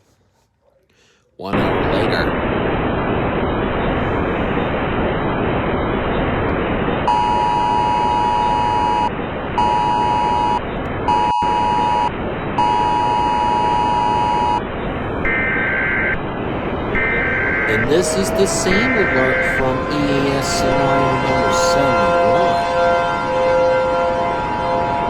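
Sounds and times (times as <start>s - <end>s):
two-tone alarm blasts: 7.0s - 25.0s
high data tones: 17.0s - 22.7s.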